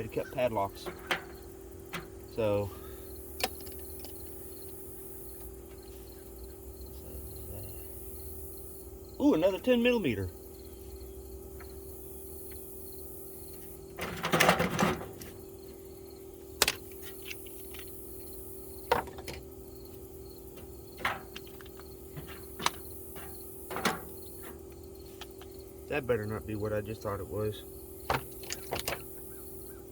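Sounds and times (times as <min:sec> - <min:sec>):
steady hum: 0:00.0 - 0:29.9
metal tools clattering: 0:00.4 - 0:02.6, 0:14.0 - 0:15.4, 0:20.5 - 0:25.5, 0:28.1 - 0:29.1
metal tools clinking: 0:00.6 - 0:02.6, 0:14.0 - 0:15.4, 0:20.5 - 0:24.6.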